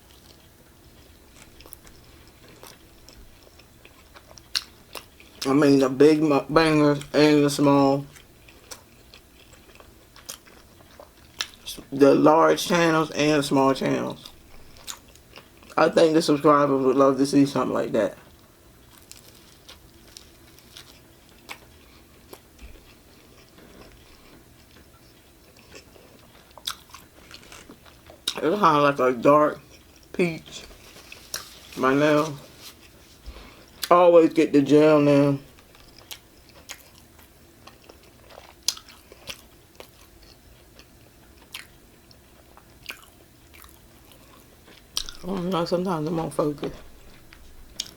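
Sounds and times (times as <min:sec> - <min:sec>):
quiet chewing: 0:00.0 - 0:05.6, 0:08.0 - 0:11.9, 0:14.2 - 0:15.8, 0:18.2 - 0:28.4, 0:29.5 - 0:34.0, 0:35.5 - 0:45.5, 0:46.1 - 0:47.9.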